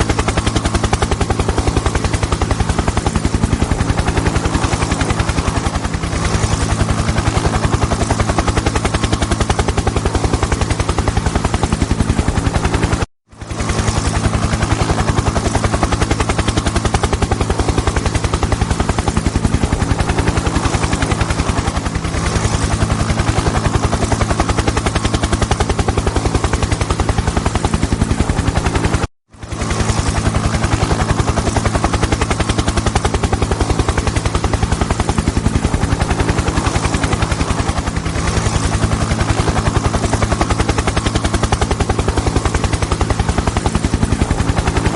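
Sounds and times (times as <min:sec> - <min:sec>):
helicopter engine hum: 0:00.0 - 0:44.9
helicopter rotor blades chopping: 0:00.0 - 0:44.9.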